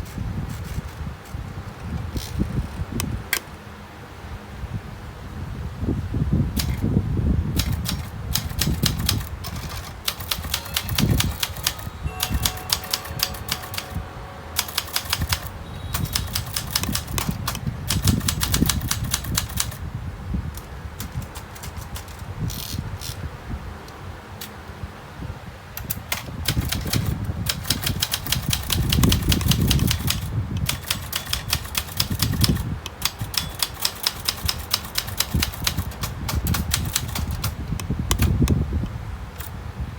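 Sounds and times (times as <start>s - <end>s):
typewriter keystrokes clacking: 7.6s - 11.8s.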